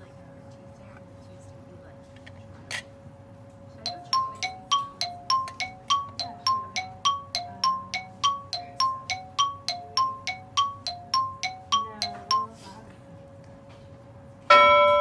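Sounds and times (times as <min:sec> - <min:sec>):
ringing mallet notes: 0:03.9 - 0:12.6, 0:14.5 - 0:15.0.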